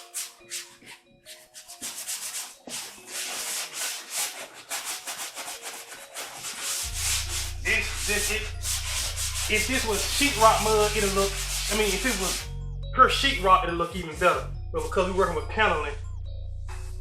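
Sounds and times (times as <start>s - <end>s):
hand sanding wall: 0.0s - 12.5s.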